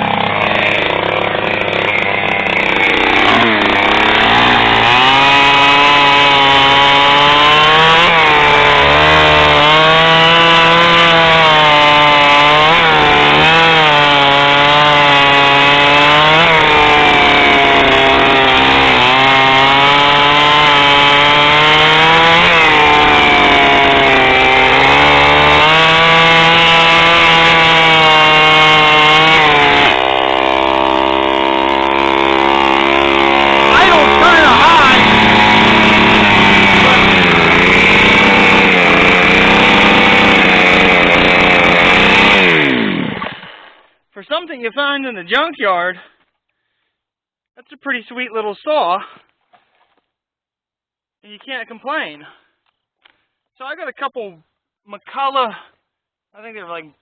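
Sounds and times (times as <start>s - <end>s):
chainsaw cutting wood: 0.0s - 44.0s, 52.6s - 53.6s.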